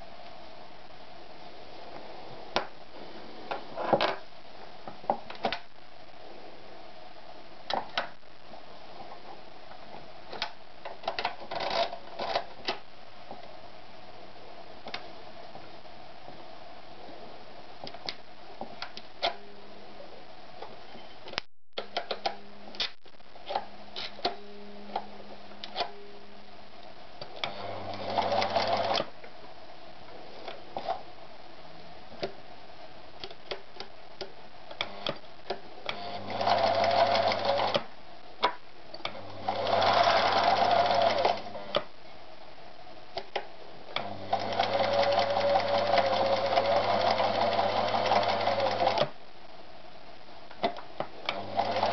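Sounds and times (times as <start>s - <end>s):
sewing machine stitching: 27.4s - 29.0s, 35.9s - 37.8s, 39.2s - 41.8s, 44.0s - 49.1s, 51.3s - 51.9s.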